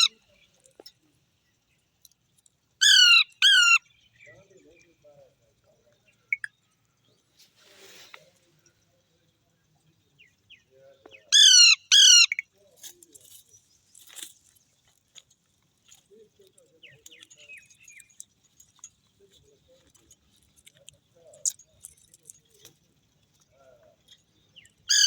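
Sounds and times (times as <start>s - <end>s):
parakeet screeching: 2.8s - 3.8s, 11.3s - 12.4s.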